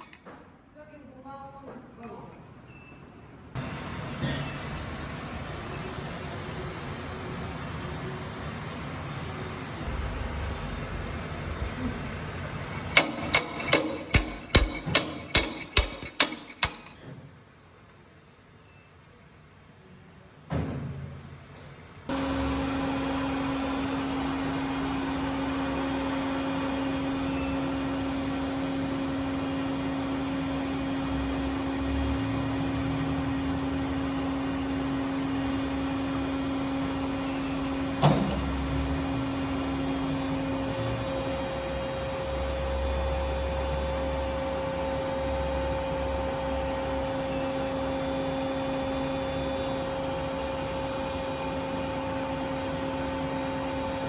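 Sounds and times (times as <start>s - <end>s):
sharp knock: 12.8s - 17.0s.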